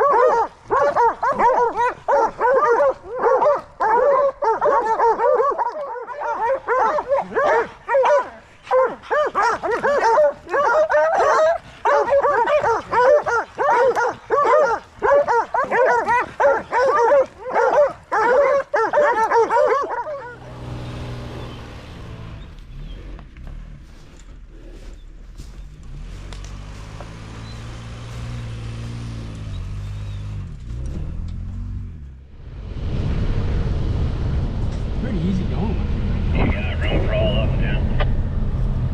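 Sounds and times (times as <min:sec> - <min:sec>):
hounds baying: 0:00.0 - 0:21.6
low steady rumble: 0:32.1 - 0:38.9.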